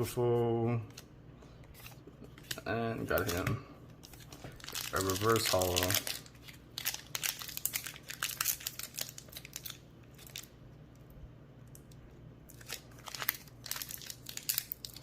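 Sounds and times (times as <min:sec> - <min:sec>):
foil wrapper crinkling and tearing: 0:04.0 - 0:10.5, 0:12.5 - 0:15.0.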